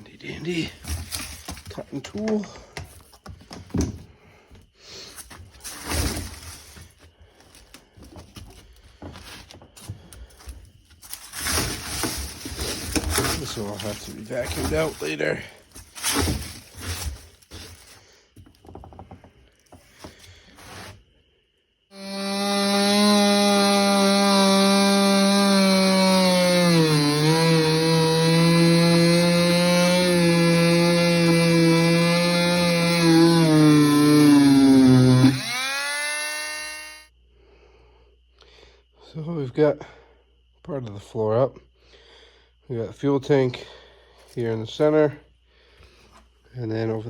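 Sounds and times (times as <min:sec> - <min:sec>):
power cutting tool whining: 0:21.9 - 0:37.1
rotting wood cracking and tearing: 0:22.0 - 0:36.8.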